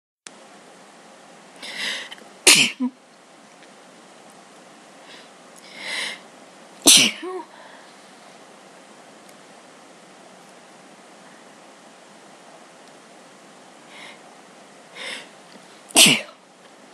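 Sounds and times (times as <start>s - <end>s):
person sneezing: 6.9s - 7.6s, 16.0s - 16.4s.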